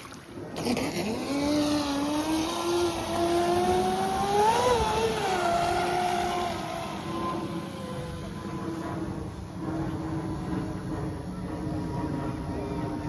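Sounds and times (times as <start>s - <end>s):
rc speedboat motor whine: 0.5s - 10.5s.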